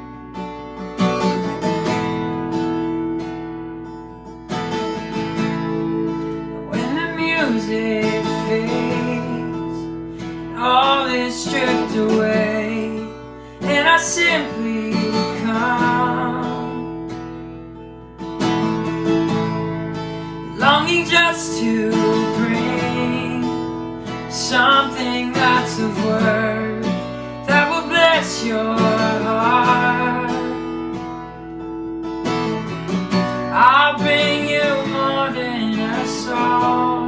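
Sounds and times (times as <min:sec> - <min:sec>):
strummed acoustic guitar: 0:00.0 - 0:37.0
person singing: 0:06.6 - 0:09.9, 0:10.5 - 0:17.0, 0:20.5 - 0:30.8, 0:33.5 - 0:37.0.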